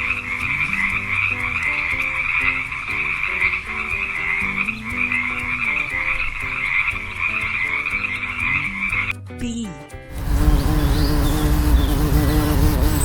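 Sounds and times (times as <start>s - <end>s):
frogs croaking in chorus: 0.0s - 9.1s.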